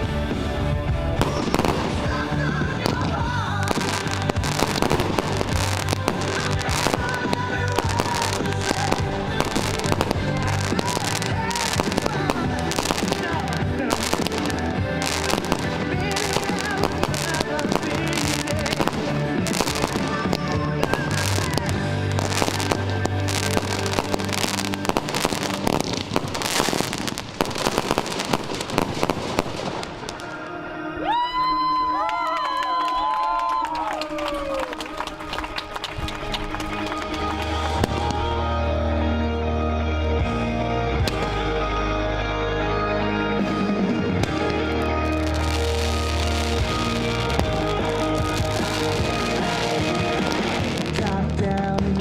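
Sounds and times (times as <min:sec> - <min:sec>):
loud music with bass line: 0:00.0 - 0:29.1, 0:36.0 - 0:52.0
fireworks bangs and crackles: 0:00.0 - 0:30.5, 0:34.9 - 0:38.4, 0:43.4 - 0:52.0.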